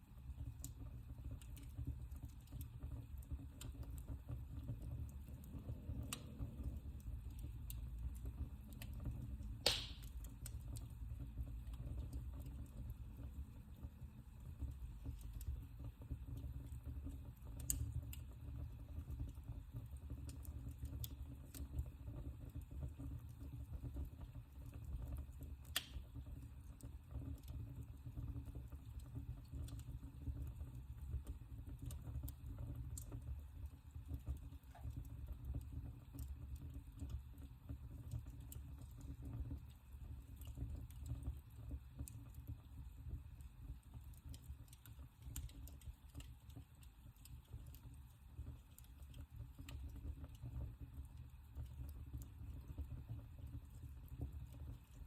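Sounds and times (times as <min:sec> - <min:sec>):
low rumble of flames: 0:00.0 - 0:55.0
wood fire crackling: 0:00.0 - 0:55.0
fire pops: 0:00.2 - 0:21.9, 0:24.7 - 0:27.7.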